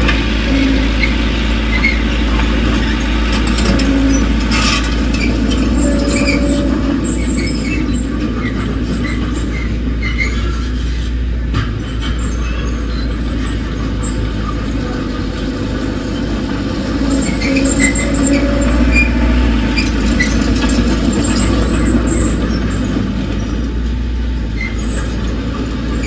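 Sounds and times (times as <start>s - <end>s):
heavy diesel machinery rumbling: 0.0s - 26.0s
short metallic squeaks: 2.7s - 11.2s, 17.0s - 23.6s.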